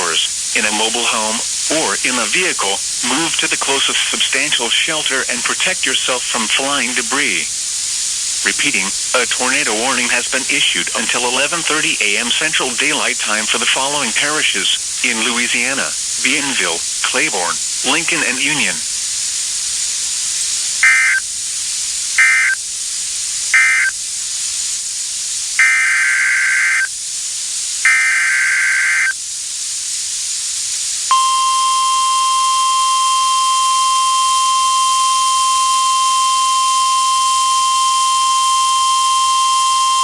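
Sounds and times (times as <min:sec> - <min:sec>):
steady warning alarm tone: 0:00.0 - 0:07.5, 0:08.4 - 0:18.8, 0:20.8 - 0:21.2, 0:22.2 - 0:22.6, 0:23.6 - 0:24.0, 0:25.6 - 0:26.9, 0:27.9 - 0:29.1, 0:31.1 - 0:40.0
warbling data tone bursts: 0:00.0 - 0:07.5, 0:08.4 - 0:18.8, 0:20.8 - 0:21.2, 0:22.2 - 0:22.6, 0:23.6 - 0:23.9, 0:25.6 - 0:26.9, 0:27.9 - 0:29.1, 0:31.1 - 0:40.0
radio hiss: 0:00.0 - 0:40.0.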